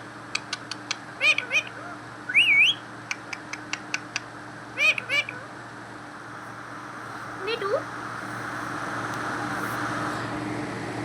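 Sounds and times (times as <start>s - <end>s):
parrot chirps: 0.4s - 5.6s
parrot wavy whistle: 2.3s - 2.9s.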